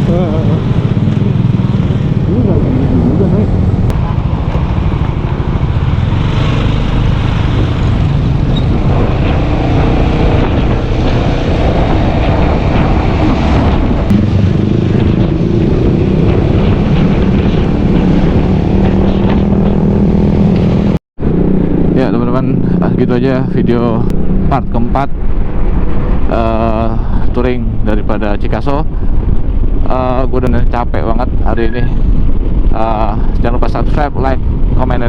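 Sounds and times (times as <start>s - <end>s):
scooter engine drone: 0.0s - 26.8s
wind rumble on microphone: 0.0s - 35.0s.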